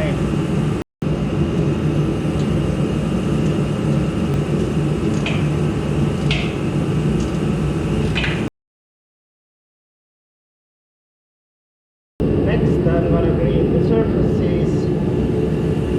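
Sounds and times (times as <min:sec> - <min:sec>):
space heater humming and whirring: 0:00.0 - 0:08.5, 0:12.2 - 0:15.9.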